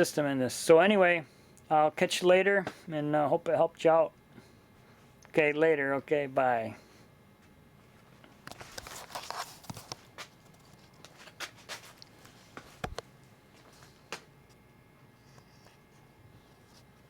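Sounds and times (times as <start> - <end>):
sharp clicks and knocks: 12.8 - 13.1.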